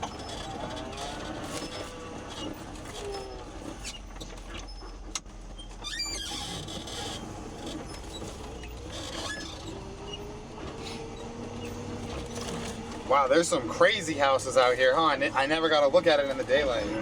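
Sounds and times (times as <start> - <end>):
truck engine and road hum: 0.0 - 17.0
brief squeak: 1.4 - 5.0, 5.6 - 12.6.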